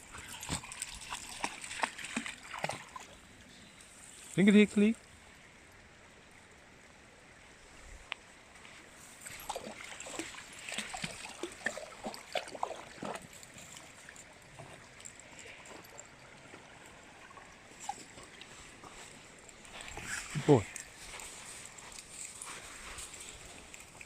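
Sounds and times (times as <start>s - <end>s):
dog splashing through water: 0.1s - 3.2s, 9.2s - 16.0s.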